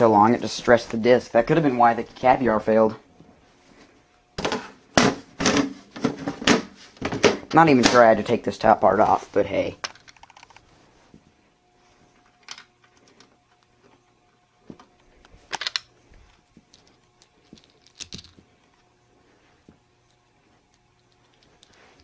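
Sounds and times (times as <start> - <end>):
faint steady hum: 0.0 - 22.0
plastic parts clicking and scraping: 9.8 - 10.7, 20.7 - 22.0.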